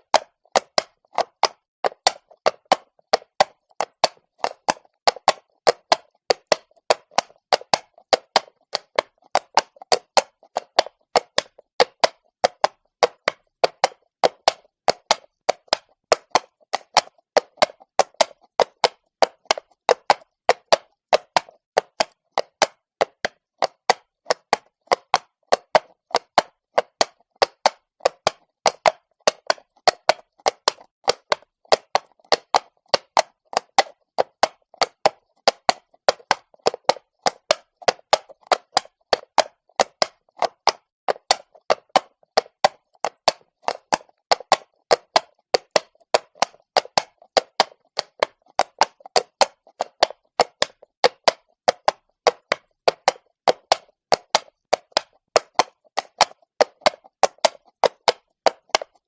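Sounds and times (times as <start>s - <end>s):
horse hooves clopping on cobblestone: 0.0s - 59.0s.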